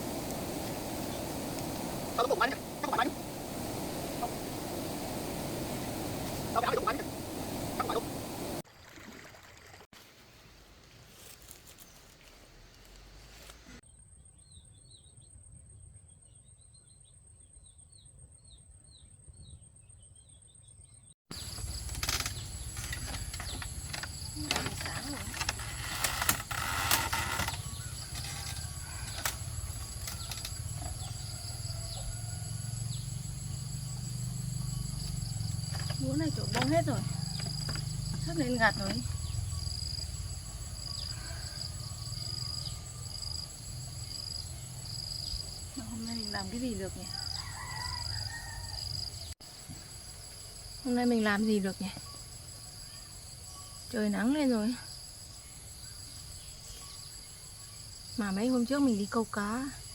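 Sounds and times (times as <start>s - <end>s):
insects shrilling: 0.0s - 8.6s, 21.3s - 51.0s.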